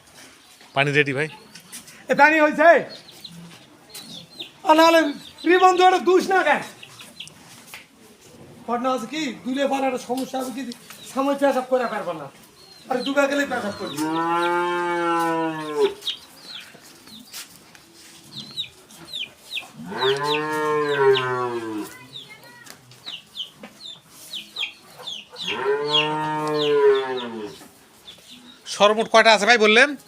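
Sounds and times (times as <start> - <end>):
cows mooing: 13.7 - 16.0, 19.8 - 22.0, 25.4 - 27.6.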